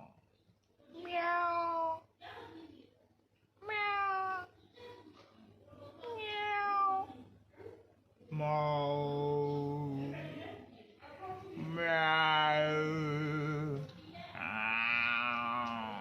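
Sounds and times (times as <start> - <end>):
cat meowing: 1.0 - 2.0, 3.6 - 4.5, 6.0 - 7.1.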